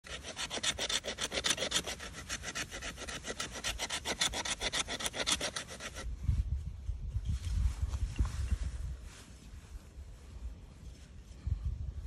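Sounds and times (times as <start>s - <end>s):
blade sawing wood: 0.0s - 6.1s.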